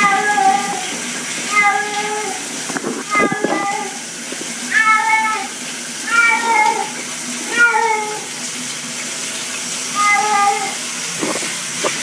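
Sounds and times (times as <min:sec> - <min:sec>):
cat meowing: 0:00.0 - 0:00.8, 0:01.5 - 0:02.4, 0:03.0 - 0:04.0, 0:04.7 - 0:05.5, 0:06.1 - 0:08.3, 0:10.0 - 0:10.8
shower water hissing: 0:00.0 - 0:12.0.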